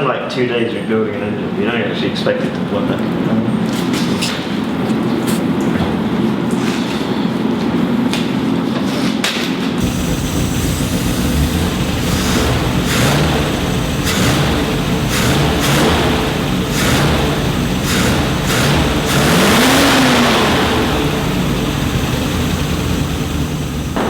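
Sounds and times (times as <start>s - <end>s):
v eight engine revving: 9.8s - 24.0s.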